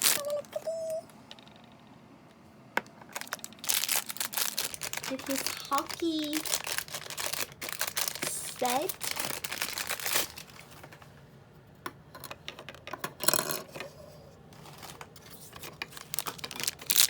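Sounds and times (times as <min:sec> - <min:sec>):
plastic packaging rustle: 0:00.0 - 0:01.0, 0:03.1 - 0:11.0, 0:14.6 - 0:17.0
plastic pieces clicking: 0:15.6 - 0:17.0.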